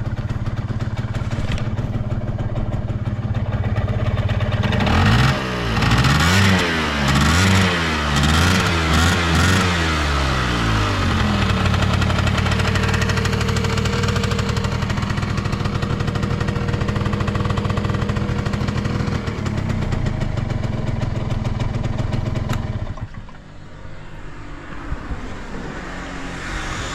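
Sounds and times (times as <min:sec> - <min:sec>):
scooter engine revving and idling: 0:00.0 - 0:26.9.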